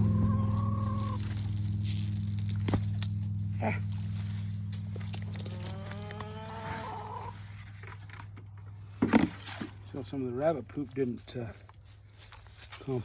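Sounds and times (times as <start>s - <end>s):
steady low hum: 0.0s - 10.6s
cow mooing: 5.4s - 7.4s.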